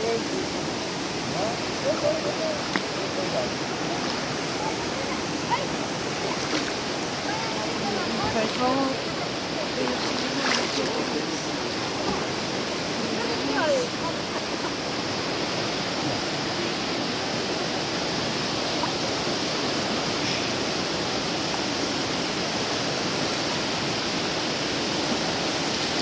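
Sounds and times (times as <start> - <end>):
river water rushing: 0.0 - 26.0.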